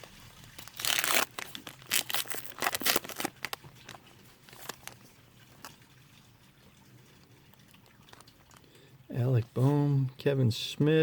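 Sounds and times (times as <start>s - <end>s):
wrapper tearing and crinkling: 0.4s - 5.1s.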